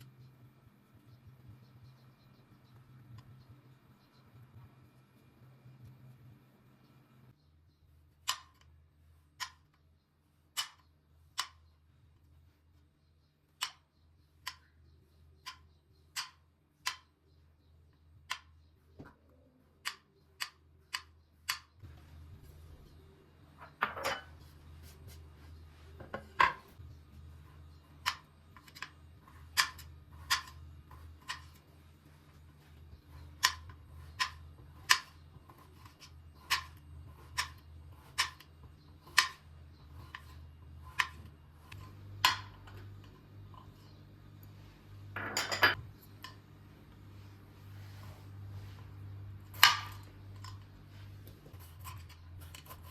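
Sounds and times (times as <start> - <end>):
faint low hum: 0.0 - 52.9.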